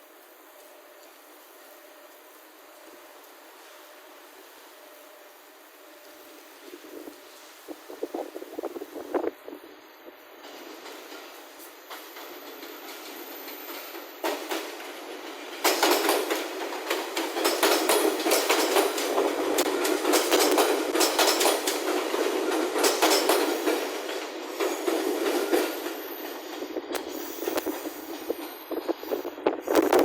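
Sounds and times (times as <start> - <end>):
train wheels clattering over rail joints: 10.4 - 30.0.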